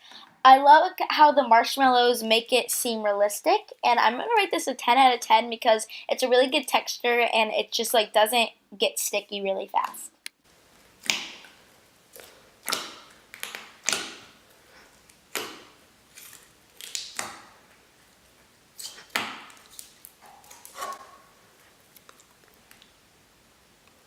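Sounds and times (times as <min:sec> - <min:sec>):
slime popping and squelching: 0:11.0 - 0:17.7.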